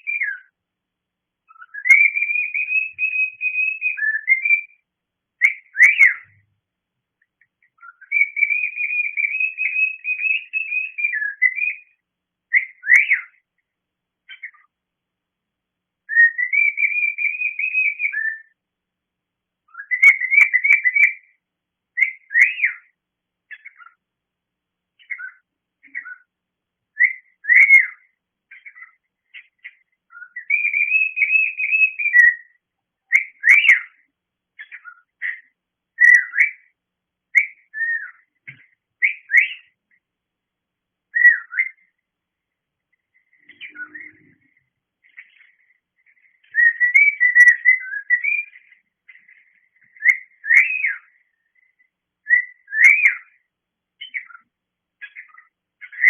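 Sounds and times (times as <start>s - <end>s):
cockatiel chirps: 1.5s - 4.8s, 7.8s - 13.4s, 14.3s - 14.7s, 19.7s - 21.4s, 22.0s - 24.0s, 25.0s - 26.3s, 27.0s - 36.7s, 37.3s - 39.8s, 41.1s - 42.0s, 43.3s - 53.4s, 54.0s - 56.0s
cockatiel whistling: 1.5s - 4.8s, 27.0s - 29.0s, 30.1s - 34.0s, 39.0s - 39.7s, 41.1s - 41.9s, 46.5s - 48.8s, 50.0s - 51.1s, 52.3s - 53.4s.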